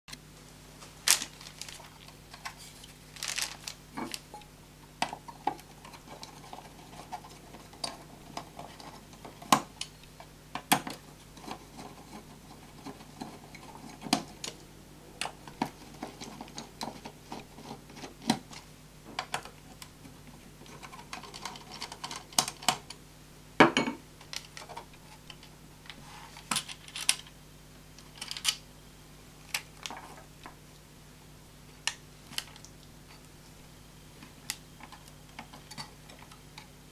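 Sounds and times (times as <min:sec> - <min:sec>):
hands handling computer parts: 0:00.8 - 0:09.9, 0:24.2 - 0:27.4, 0:28.0 - 0:28.6.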